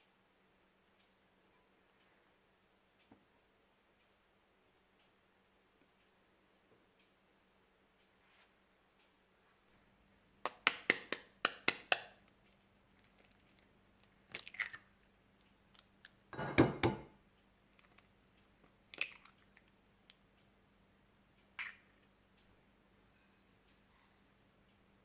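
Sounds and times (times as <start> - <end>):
sharp snaps: 10.4 - 12.5
kitchen knocks: 16.4 - 17.1.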